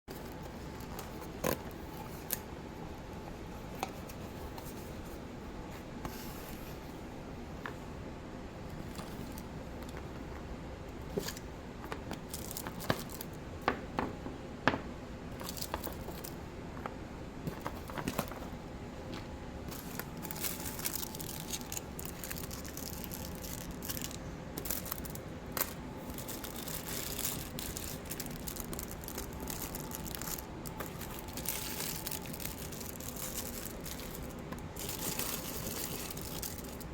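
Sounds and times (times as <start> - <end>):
plastic packaging crinkling: 11.2 - 13.4, 15.4 - 16.4, 17.5 - 36.9.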